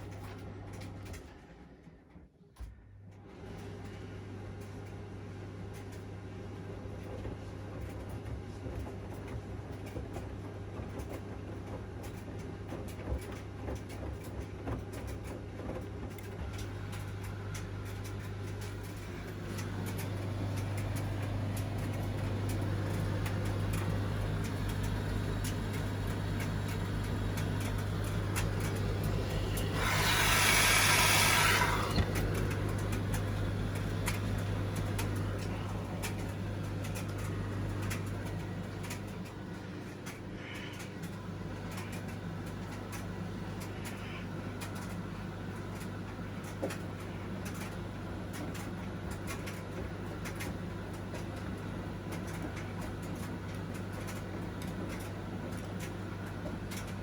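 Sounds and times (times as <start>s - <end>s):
washing machine humming: 0.0s - 57.0s
loud hiss: 29.8s - 32.0s.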